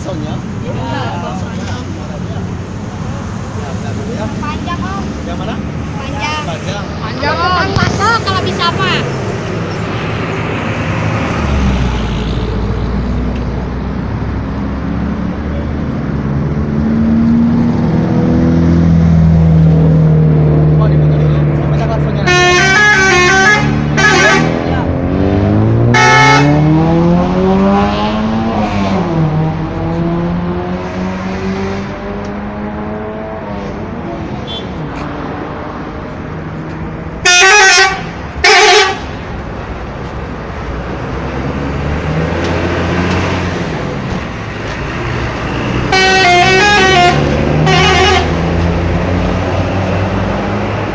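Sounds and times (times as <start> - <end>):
loud horn blasts: 22.2 - 24.7, 25.9 - 26.7, 34.4 - 34.8, 37.2 - 39.2, 45.8 - 48.6
multi-tone bus horn tune: 22.2 - 24.7, 25.9 - 26.6, 37.2 - 39.2, 45.8 - 48.6
bus engine running: 35.9 - 50.9.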